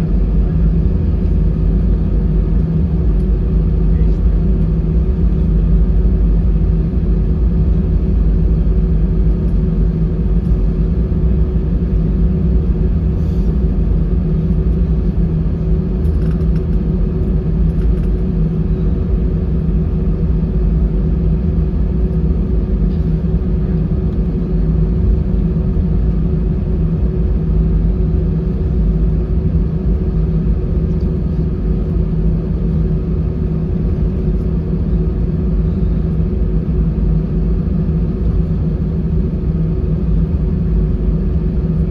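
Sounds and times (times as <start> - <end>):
jet engines running at low power: 0.0 - 41.9.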